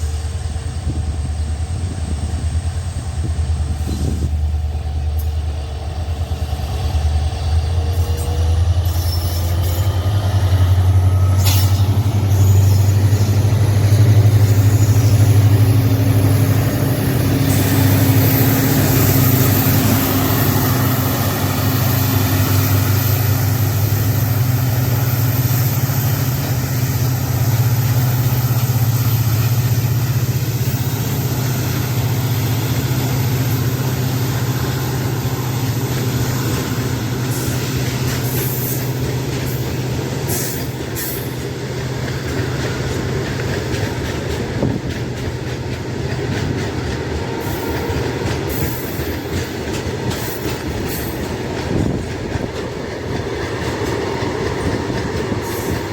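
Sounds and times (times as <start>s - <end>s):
diesel locomotive hum: 0.0s - 55.9s.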